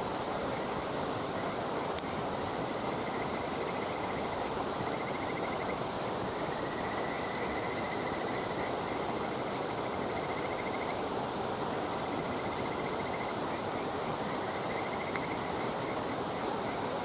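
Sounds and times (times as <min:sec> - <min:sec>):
steady rushing hiss: 0:00.0 - 0:17.0
insect trilling: 0:02.7 - 0:05.8, 0:06.4 - 0:11.0, 0:12.2 - 0:13.4, 0:14.2 - 0:16.1.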